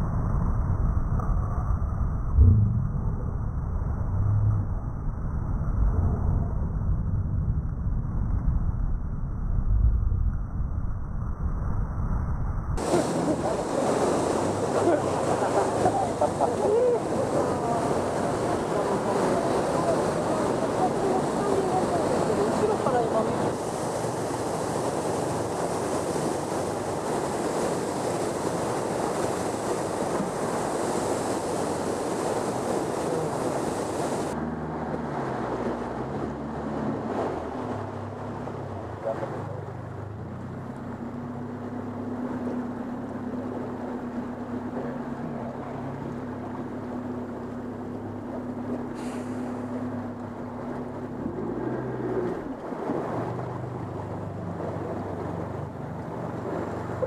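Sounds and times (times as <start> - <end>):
boat engine humming: 0.0 - 10.7, 12.2 - 57.0
waterfall rushing: 12.8 - 34.4.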